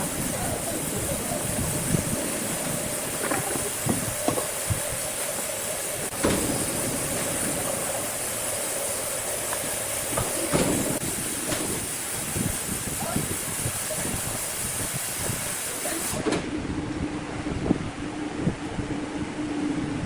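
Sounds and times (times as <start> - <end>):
sawmill machinery humming and hissing: 0.0 - 16.3
knocks and clunks: 6.1 - 7.6, 9.5 - 11.8.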